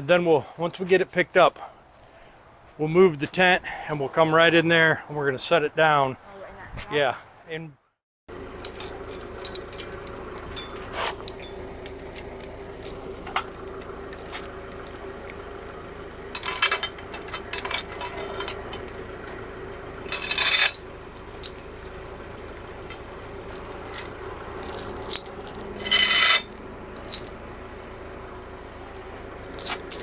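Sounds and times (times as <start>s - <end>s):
metal tools clinking: 8.6s - 13.6s, 16.3s - 19.0s, 20.1s - 21.8s, 22.9s - 27.3s, 29.4s - 30.0s.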